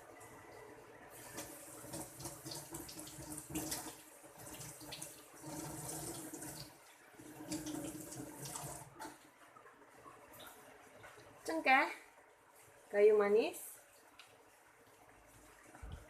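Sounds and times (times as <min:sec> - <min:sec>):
tap water running into sink: 0:01.3 - 0:09.2.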